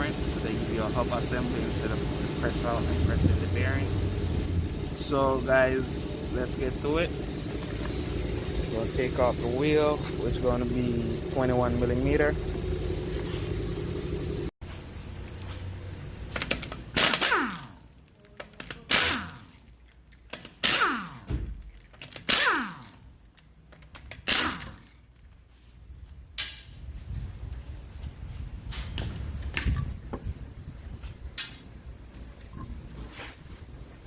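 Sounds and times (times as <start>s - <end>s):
impact wrench bursts: 16.4s - 17.8s, 18.7s - 19.6s, 20.3s - 23.1s, 24.0s - 25.0s.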